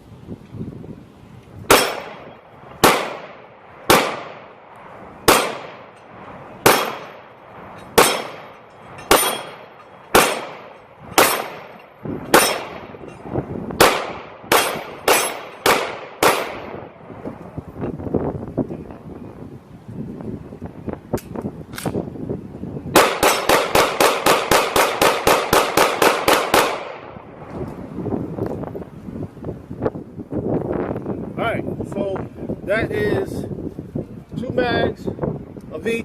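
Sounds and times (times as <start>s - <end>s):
pistol shots: 1.7s - 4.6s, 5.2s - 6.0s, 6.6s - 7.3s, 7.9s - 13.0s, 13.8s - 16.9s, 23.0s - 27.2s.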